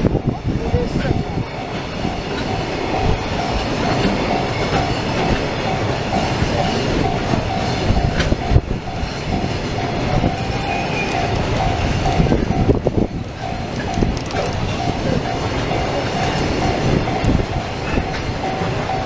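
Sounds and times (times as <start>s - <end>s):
train wheels rumbling: 0.0s - 19.0s
wheels clacking over rail joints: 0.0s - 19.0s.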